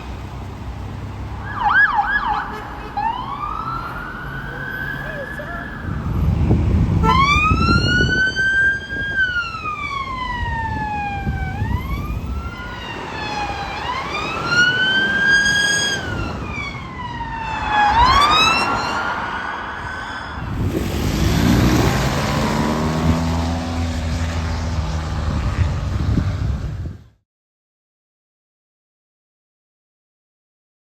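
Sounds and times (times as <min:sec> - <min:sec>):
vehicle engine and road noise: 0:00.0 - 0:27.2
emergency siren wailing: 0:01.4 - 0:24.8.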